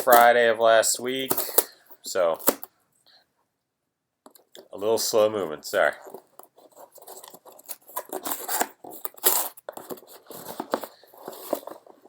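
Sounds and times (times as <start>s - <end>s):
packaging tearing and crinkling: 0.0s - 0.3s, 1.1s - 1.7s, 2.4s - 2.7s, 6.0s - 12.0s.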